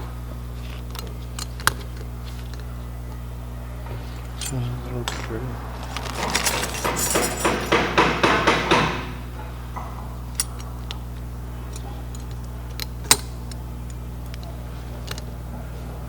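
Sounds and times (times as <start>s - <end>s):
steady low hum: 0.0s - 16.0s
metal tools clinking: 4.0s - 8.0s, 10.3s - 15.3s.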